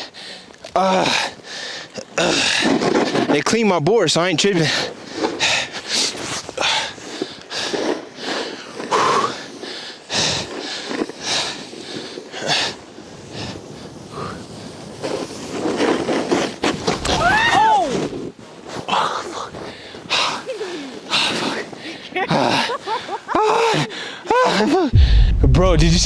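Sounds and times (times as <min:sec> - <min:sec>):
snowboard scraping over snow: 0:05.0 - 0:18.9.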